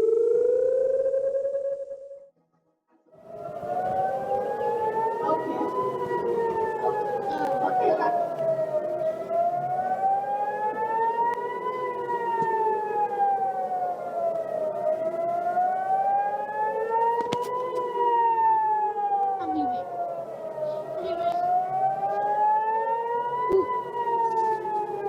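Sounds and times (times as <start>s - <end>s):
warning siren wailing: 0.0s - 2.3s, 3.1s - 25.0s.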